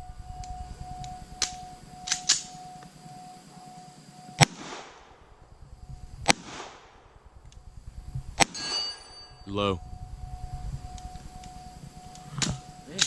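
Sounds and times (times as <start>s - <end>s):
pistol shots with echo: 4.4s - 5.2s, 6.2s - 7.0s.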